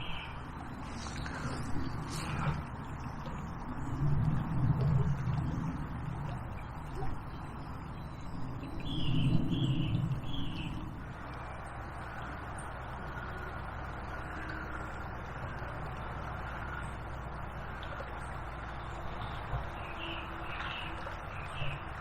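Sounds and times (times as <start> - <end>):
low rumble: 0.0 - 14.6
bird calls: 19.7 - 21.9.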